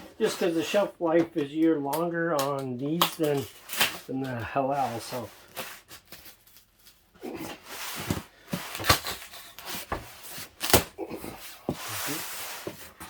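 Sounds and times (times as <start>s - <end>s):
cardboard rustling and scraping: 3.4s - 13.0s.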